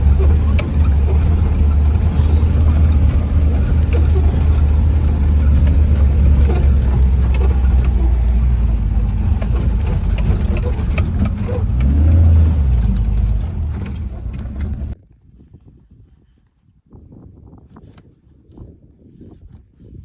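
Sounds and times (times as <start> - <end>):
knocks and rattles: 0.0 - 15.0
off-road vehicle engine running: 0.0 - 15.0.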